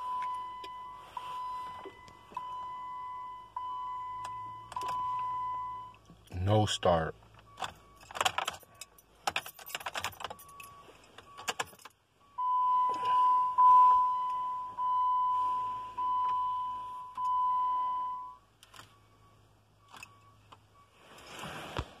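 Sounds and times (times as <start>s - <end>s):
dashboard warning beep: 0.0s - 8.2s, 9.4s - 21.4s
keys jangling: 8.0s - 10.7s.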